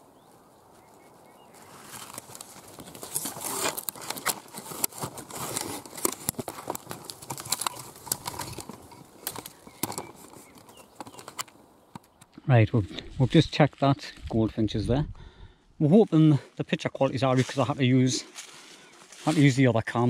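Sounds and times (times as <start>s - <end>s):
twigs and leaves rustling: 0.0s - 14.8s, 15.8s - 20.0s.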